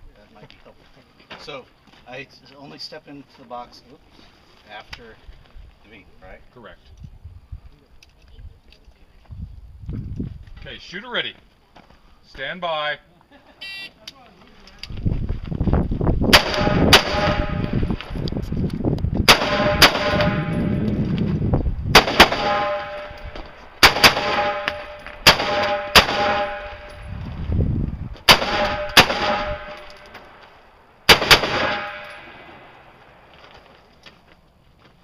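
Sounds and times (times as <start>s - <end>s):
rifle shots: 16.3s - 17.7s, 19.2s - 20.8s, 21.9s - 27.0s, 28.2s - 30.0s, 31.0s - 32.7s.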